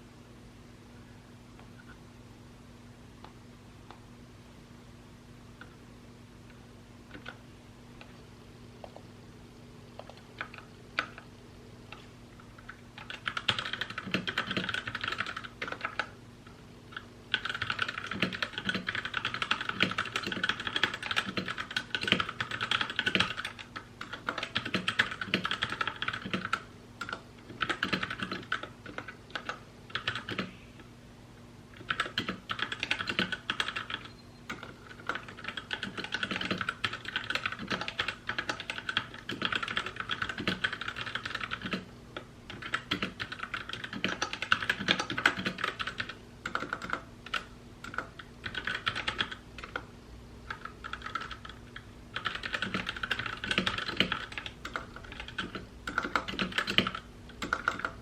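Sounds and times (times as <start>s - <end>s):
faint steady hum: 0.0s - 58.0s
typing on mechanical keyboard: 7.1s - 7.4s, 10.0s - 11.2s, 11.9s - 16.1s, 16.9s - 30.5s, 31.8s - 49.9s, 50.5s - 58.0s.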